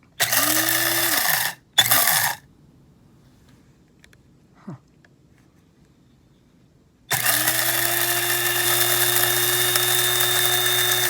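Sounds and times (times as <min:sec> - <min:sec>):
coffee grinder running: 0:00.2 - 0:02.4, 0:07.1 - 0:11.0.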